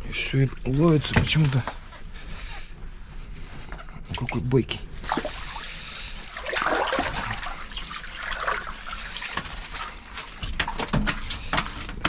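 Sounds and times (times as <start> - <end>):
water splashing and trickling: 0.0 - 2.0, 4.0 - 11.5.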